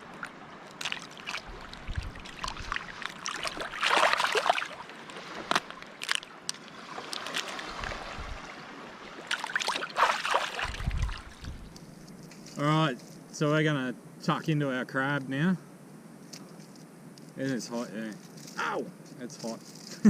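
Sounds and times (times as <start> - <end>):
water sloshing and splashing: 0.0 - 12.0.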